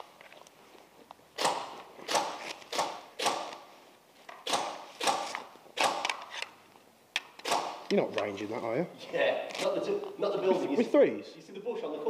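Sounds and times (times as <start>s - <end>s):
airsoft gun shots: 1.4s - 3.6s, 4.4s - 6.2s, 7.4s - 7.9s.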